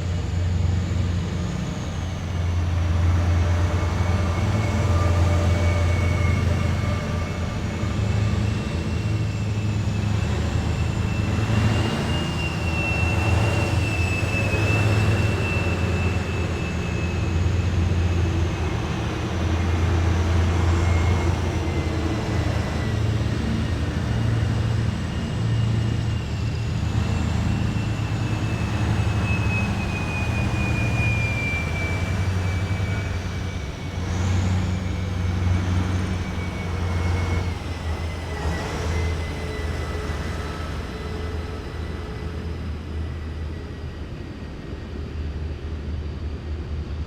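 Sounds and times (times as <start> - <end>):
heavy vehicles engine rumble: 0.0 - 47.0.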